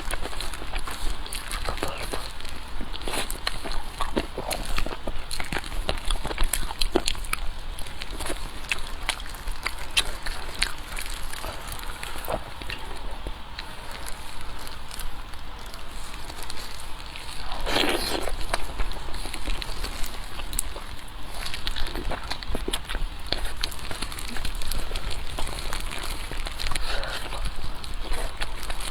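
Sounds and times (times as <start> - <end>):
crisp chewing clicks and crackles: 0.0 - 28.9.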